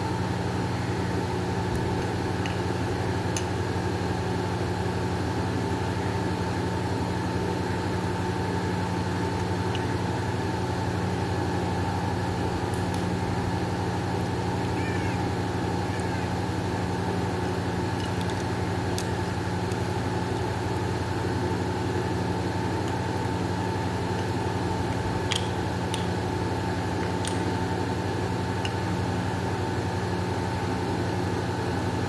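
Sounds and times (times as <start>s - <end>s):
steady mechanical hum: 0.0s - 32.0s
faint short high calls: 14.6s - 16.7s
light clicks: 24.2s - 26.2s.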